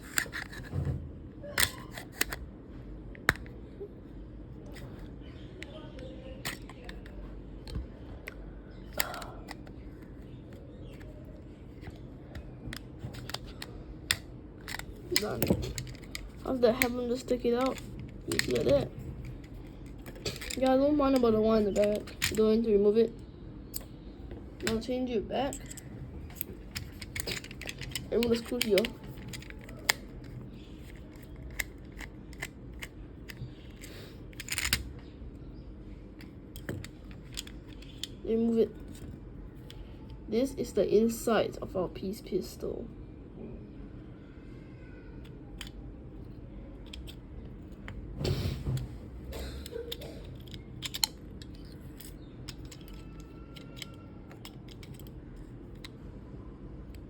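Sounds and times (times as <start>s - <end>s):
steady low hum: 0.0s - 57.0s
pistol parts clicking and knocking: 3.1s - 3.6s, 5.6s - 11.1s, 11.8s - 22.5s, 25.5s - 35.0s, 36.2s - 38.2s, 46.8s - 48.0s, 49.6s - 56.0s
screwdriver turning screw clicks: 25.6s - 30.0s, 49.9s - 55.1s.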